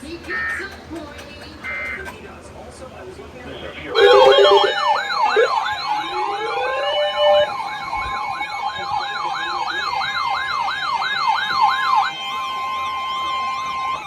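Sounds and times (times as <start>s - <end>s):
yelping electronic siren: 0.0s - 0.8s, 3.6s - 14.0s
weather radio alert tone: 0.0s - 2.2s, 3.4s - 14.0s
rising electronic siren: 3.8s - 14.0s.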